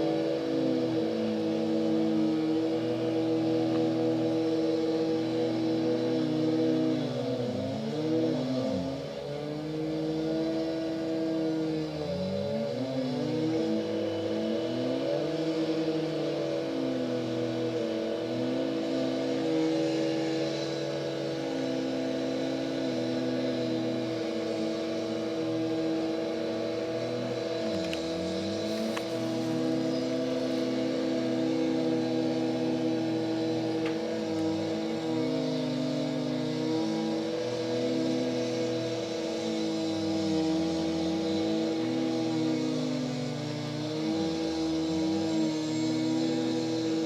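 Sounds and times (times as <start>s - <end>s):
engine revs rising and falling: 0.0s - 47.0s
machinery engine at steady pitch: 0.0s - 47.0s.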